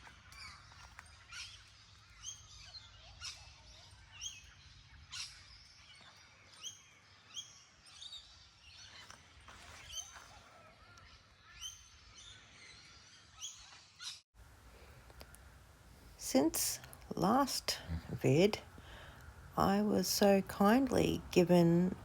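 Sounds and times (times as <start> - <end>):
birds chirping faintly: 0.0 - 22.0
low background hiss: 14.4 - 22.0.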